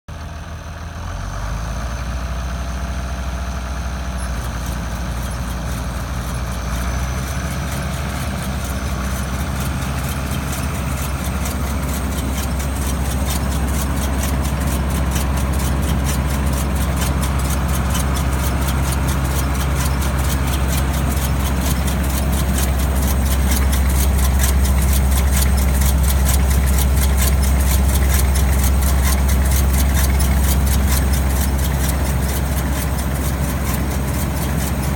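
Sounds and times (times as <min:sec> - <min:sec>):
tractor engine idling: 0:00.1 - 0:34.9
fast even clicking: 0:08.4 - 0:34.9.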